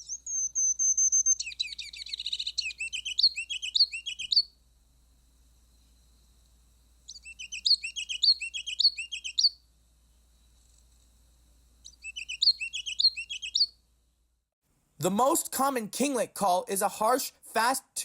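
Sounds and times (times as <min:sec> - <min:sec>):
small bird singing high notes: 0:00.0 - 0:04.5, 0:07.1 - 0:09.6, 0:11.9 - 0:13.8.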